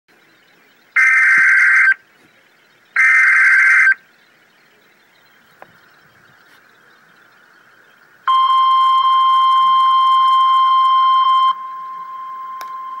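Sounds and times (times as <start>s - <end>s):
buzzy raspy digital data bursts: 3.0s - 4.4s.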